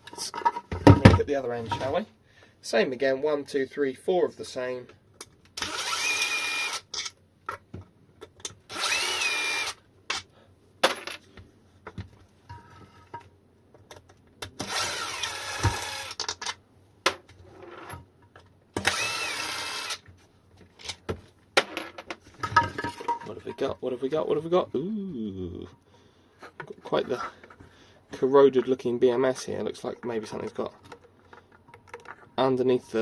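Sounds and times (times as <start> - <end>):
electric screwdriver whining: 5.6 - 6.8, 8.7 - 9.8, 14.6 - 16.2, 18.8 - 20.0.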